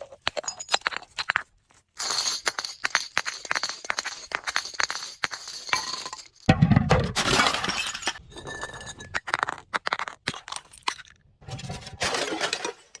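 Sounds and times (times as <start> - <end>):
glass breaking and crunching: 5.5 - 11.3.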